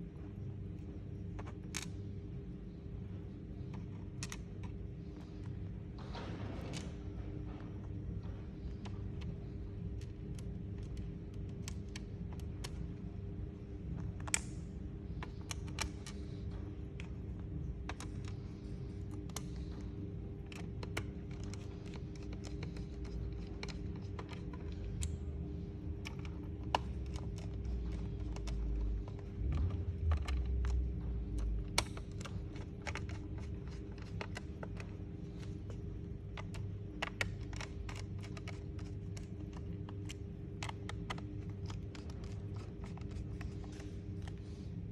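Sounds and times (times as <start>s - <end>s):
steady low hum: 0.0s - 44.9s
laptop keys clicking: 25.9s - 44.6s.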